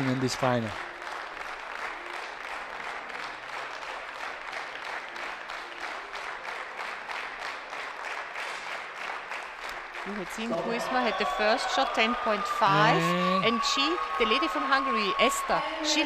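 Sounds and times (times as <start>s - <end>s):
spectators clapping: 0.0s - 16.0s
faint voices: 10.5s - 16.0s.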